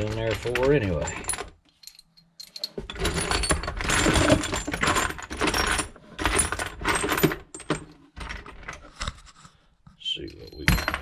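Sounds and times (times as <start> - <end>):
metal hardware clinking: 10.2 - 11.0.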